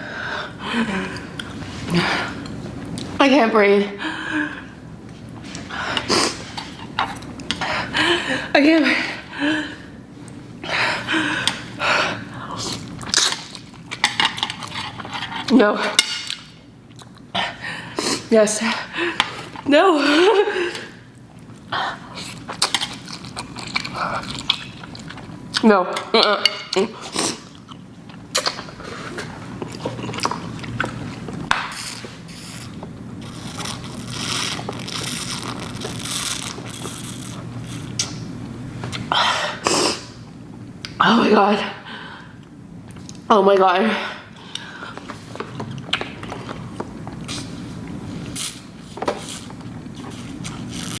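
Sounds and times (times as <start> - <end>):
person eating noisily: 0.4 - 3.2, 4.2 - 8.5, 9.2 - 40.2, 44.2 - 51.0
person chewing noodles: 1.1 - 3.2, 11.4 - 15.5, 16.3 - 18.3, 21.0 - 25.6, 26.5 - 40.1, 49.2 - 51.0.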